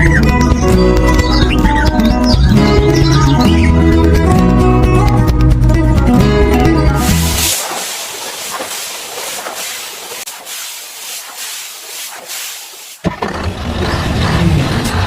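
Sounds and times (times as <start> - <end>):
rough rushing noise: 7.1 - 13.0
steady hiss: 7.2 - 13.0.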